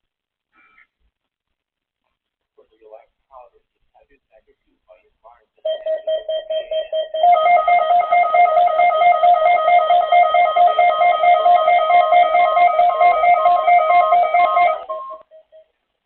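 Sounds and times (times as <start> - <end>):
emergency alert tone: 5.7 - 15.7.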